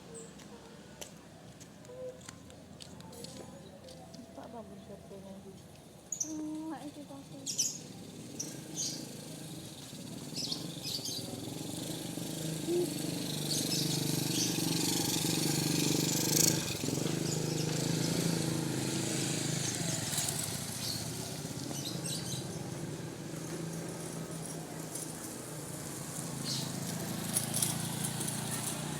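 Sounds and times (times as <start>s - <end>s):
motorcycle engine running: 6.3s - 28.9s.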